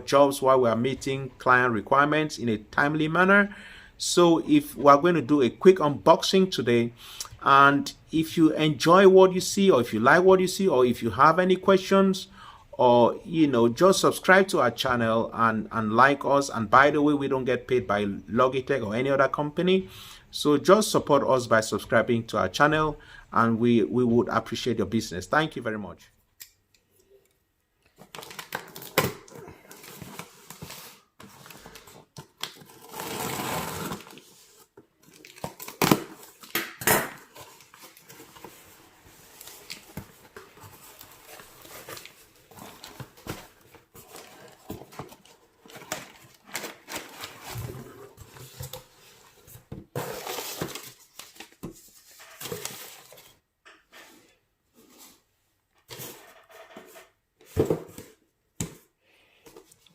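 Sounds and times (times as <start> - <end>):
packaging crinkling and tearing: 28.0 - 36.6.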